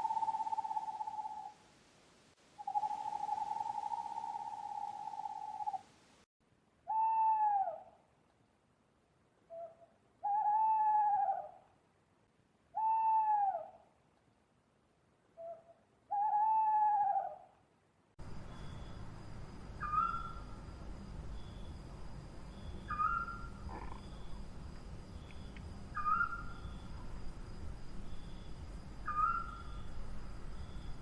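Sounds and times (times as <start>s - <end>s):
owl hooting: 0.0s - 1.6s, 2.6s - 5.9s, 6.9s - 8.0s, 9.5s - 11.7s, 12.7s - 13.8s, 15.4s - 17.6s, 19.8s - 20.5s, 22.8s - 24.3s, 25.2s - 26.8s, 29.0s - 29.8s
owl trilling: 0.0s - 1.6s, 2.6s - 5.8s, 6.9s - 7.9s, 9.5s - 11.6s, 12.8s - 13.8s, 15.4s - 17.5s, 19.8s - 20.4s, 22.8s - 24.1s, 25.9s - 26.7s, 29.0s - 29.8s.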